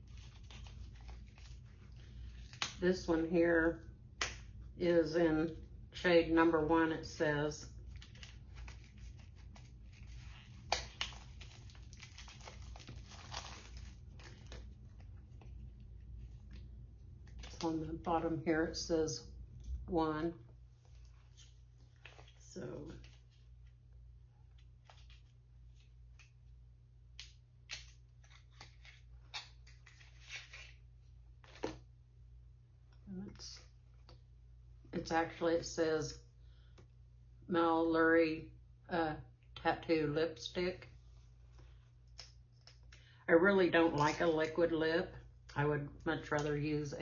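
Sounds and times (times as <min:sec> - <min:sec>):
packaging rustling: 0:07.8 - 0:16.6.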